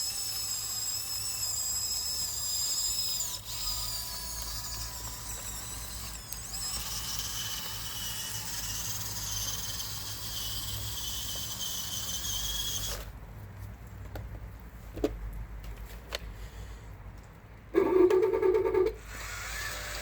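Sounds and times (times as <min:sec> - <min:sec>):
toy electric motor whine: 0:00.0 - 0:13.1, 0:17.8 - 0:20.0.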